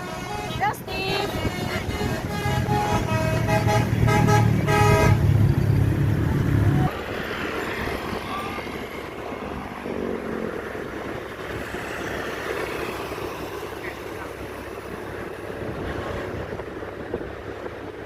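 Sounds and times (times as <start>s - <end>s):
musical vehicle horn: 0.0s - 5.5s
heavy engine rumble: 0.0s - 18.0s
traffic noise: 0.0s - 18.0s.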